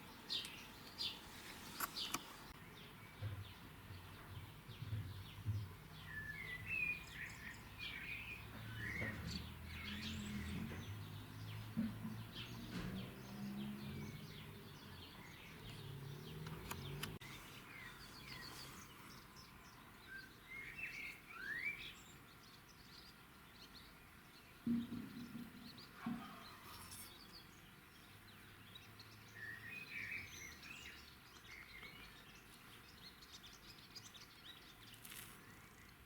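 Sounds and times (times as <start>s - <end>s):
small birds chirping: 0.0s - 36.0s
sharp clicks: 16.4s - 17.2s.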